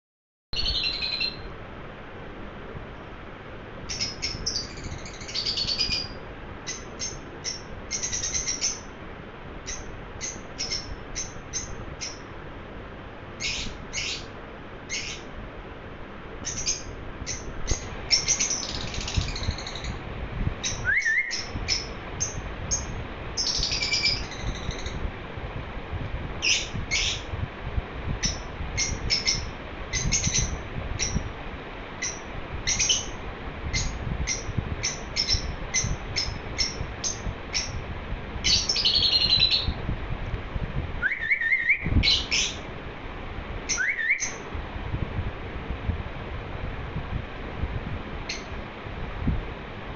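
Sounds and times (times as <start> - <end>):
lovebird chirping and warbling: 0.6 - 1.5, 3.9 - 8.9, 9.7 - 12.2, 13.4 - 14.3, 14.9 - 15.3, 16.4 - 20.0, 20.6 - 25.0, 28.2 - 31.2, 32.0 - 33.1, 33.8 - 37.8, 38.5 - 39.8, 41.1 - 42.6, 43.7 - 44.4.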